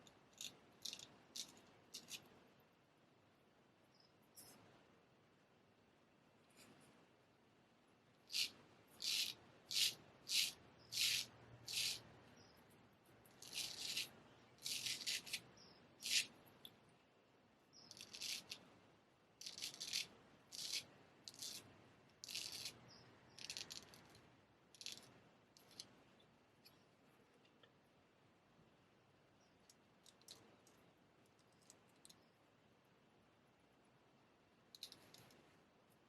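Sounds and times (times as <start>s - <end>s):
razor scraping stubble: 8.3s - 12.0s, 13.4s - 15.4s.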